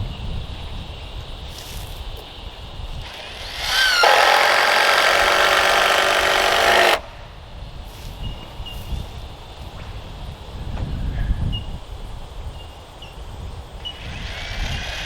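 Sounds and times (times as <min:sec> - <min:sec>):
power drill drilling into wood: 0:03.0 - 0:07.1, 0:13.9 - 0:15.0.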